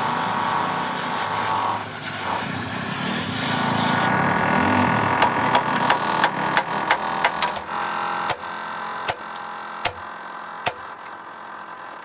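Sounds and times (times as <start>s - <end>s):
mechanical hum: 0.0s - 12.0s
sharp knocks: 5.2s - 8.5s, 9.1s - 10.1s, 10.7s - 11.0s.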